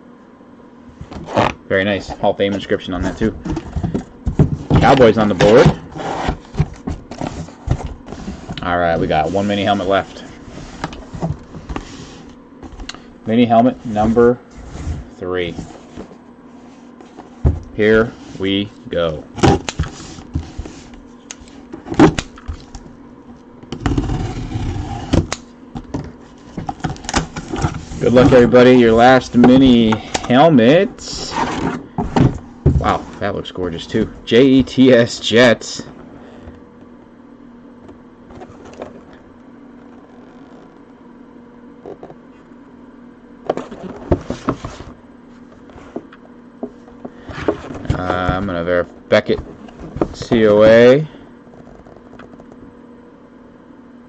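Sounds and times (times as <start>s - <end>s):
steady low hum: 0.0s - 54.0s
cardboard packaging rustling: 25.8s - 30.0s.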